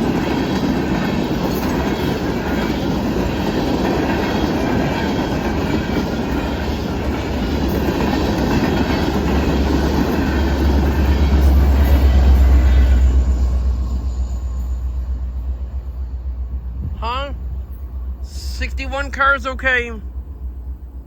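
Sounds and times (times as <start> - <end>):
steel wheels clacking over rail joints: 0.0 - 13.4
freight train cars rolling past: 0.0 - 21.0
deep rumble: 10.4 - 21.0.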